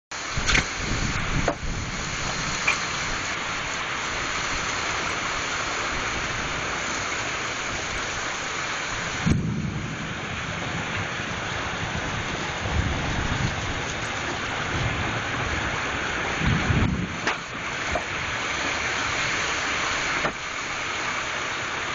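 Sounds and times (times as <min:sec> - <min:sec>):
heavy rain pouring: 0:00.1 - 0:21.9
thunder cracks: 0:09.0 - 0:18.2
rolling thunderclap: 0:09.0 - 0:18.4.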